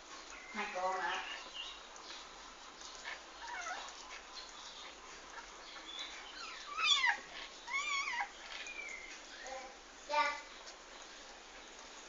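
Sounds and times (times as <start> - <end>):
newborn kittens mewing: 6.7 - 8.3.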